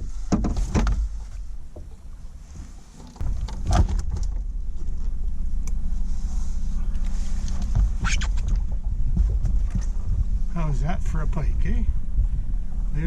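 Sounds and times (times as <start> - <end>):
boat motor running: 0.0 - 13.0.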